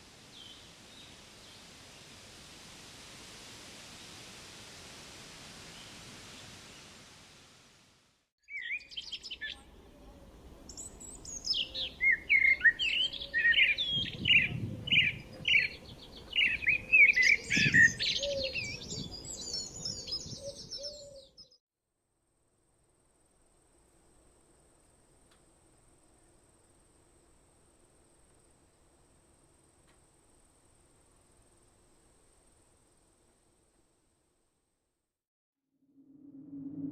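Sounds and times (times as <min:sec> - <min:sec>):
steady hiss: 0:00.0 - 0:08.3
songbirds chirping and trilling: 0:08.5 - 0:21.6.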